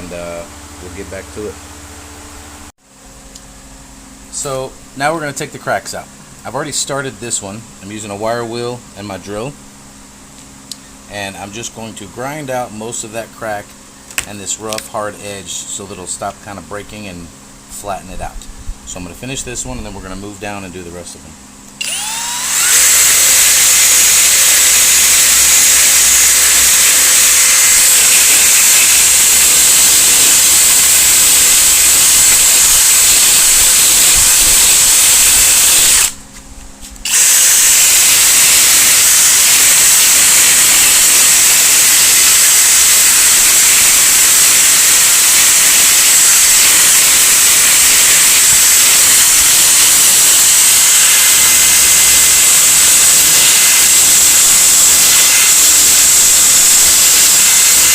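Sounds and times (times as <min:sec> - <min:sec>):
drill wire wheel grinding plastic: 0:21.8 - 0:36.2, 0:37.0 - 0:57.9.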